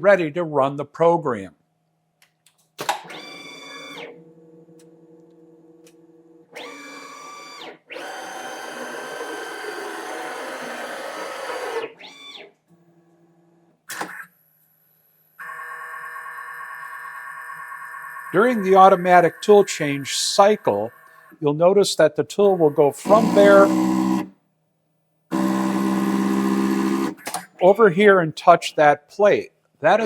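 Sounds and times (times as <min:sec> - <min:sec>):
motor whines sliding in pitch: 0:23.0 - 0:24.3, 0:25.3 - 0:27.2
sharp click: 0:27.1 - 0:27.6.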